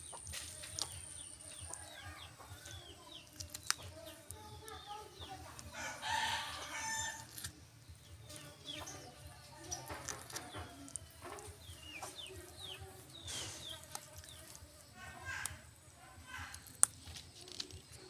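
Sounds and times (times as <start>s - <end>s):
birds chirping: 0.0s - 18.0s
rooster crowing: 5.7s - 7.3s.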